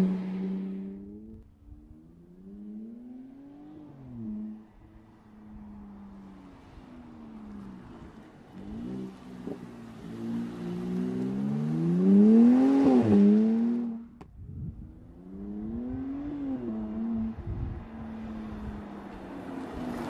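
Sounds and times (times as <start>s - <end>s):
car engine accelerating: 0.0s - 20.0s.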